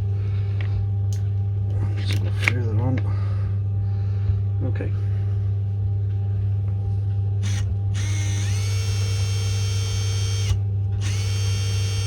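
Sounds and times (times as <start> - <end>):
electric motor whining: 7.4 - 12.0.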